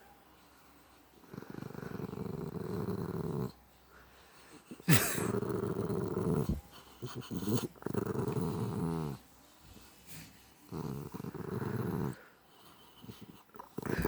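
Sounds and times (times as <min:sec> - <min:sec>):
dog growling: 0:01.2 - 0:03.6, 0:04.8 - 0:09.2, 0:10.7 - 0:14.0.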